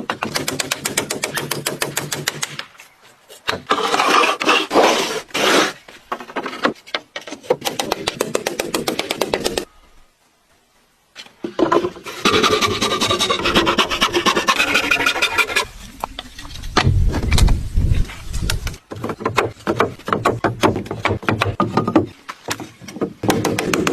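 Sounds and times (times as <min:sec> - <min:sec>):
hand tool rasping wood: 0:12.0 - 0:15.7.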